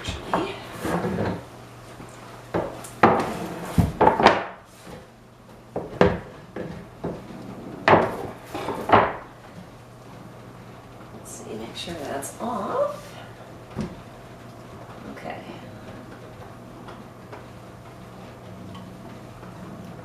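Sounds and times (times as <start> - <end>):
hard objects knocking: 2.5 - 4.6, 5.7 - 9.3.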